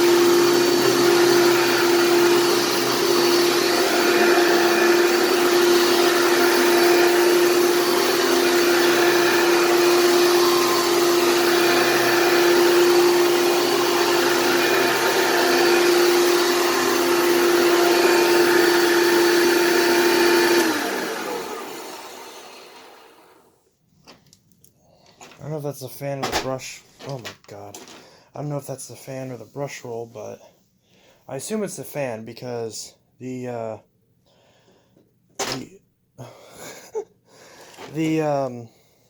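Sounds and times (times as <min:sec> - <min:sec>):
vacuum cleaner whining: 0:00.0 - 0:23.5.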